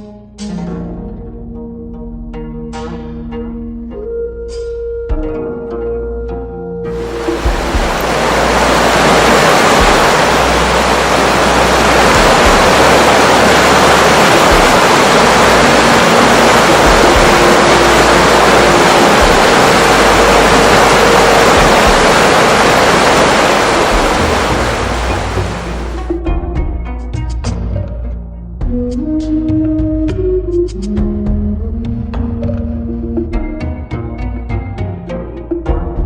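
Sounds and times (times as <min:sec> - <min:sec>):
water rushing: 0:06.9 - 0:26.2
faint music: 0:06.9 - 0:26.3.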